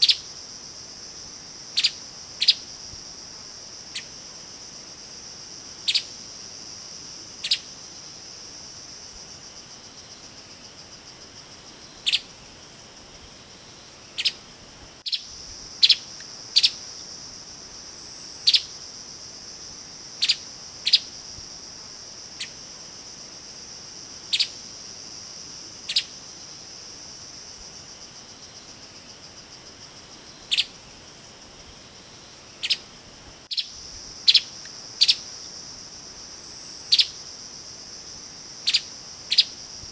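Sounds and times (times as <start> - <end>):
high-pitched insect drone: 33.5 - 39.8.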